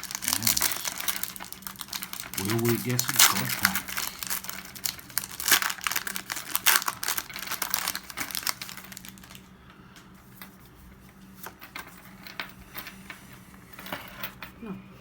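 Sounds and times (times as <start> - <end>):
foil wrapper crinkling and tearing: 0.0 - 9.4.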